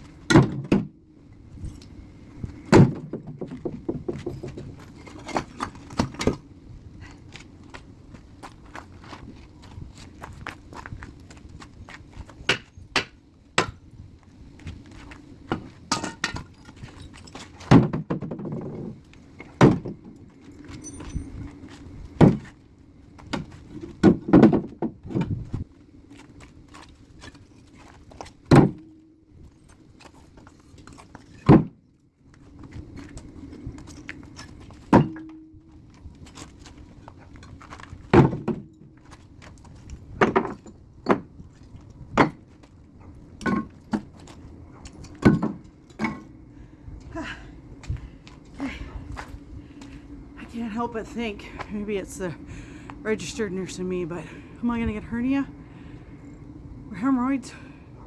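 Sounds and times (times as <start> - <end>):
concrete blocks thunking down: 0.3 - 0.9, 2.7 - 6.4, 17.4 - 20.0, 23.3 - 25.4, 38.1 - 38.8, 43.4 - 44.1, 45.2 - 46.3
low steady drone: 45.8 - 58.0.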